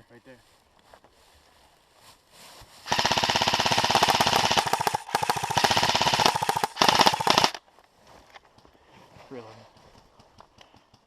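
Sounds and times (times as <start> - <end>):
airsoft rifle firing full auto: 2.9 - 7.6.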